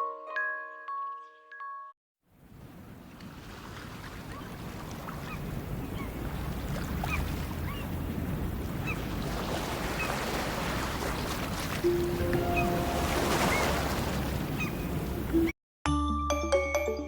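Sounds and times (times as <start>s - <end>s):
rushing water: 2.4s - 15.5s.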